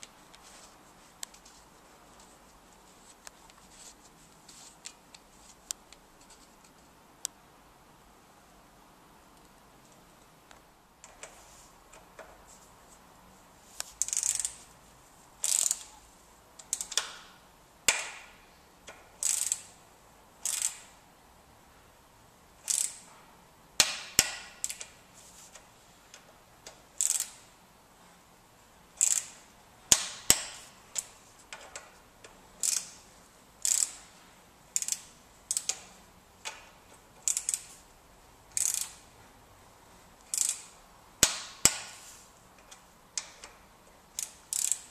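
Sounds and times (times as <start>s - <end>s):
torque wrench ratchet clicks: 14.0s - 14.6s, 15.4s - 15.9s, 18.9s - 19.7s, 20.4s - 20.9s, 22.6s - 23.1s, 27.0s - 27.4s, 29.0s - 31.1s, 32.6s - 33.0s, 33.6s - 34.0s, 34.8s - 35.9s, 37.2s - 37.8s, 38.5s - 39.0s, 40.2s - 40.8s, 44.2s - 44.9s.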